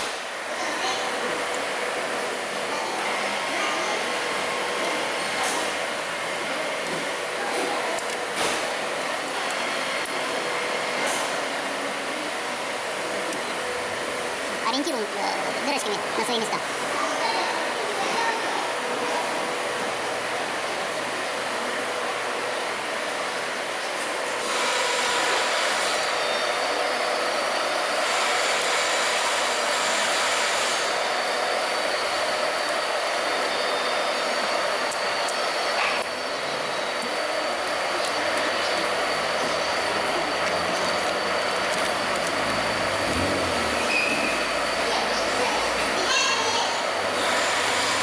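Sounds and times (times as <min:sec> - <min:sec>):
mechanical running noise: 0:34.4 - 0:48.0.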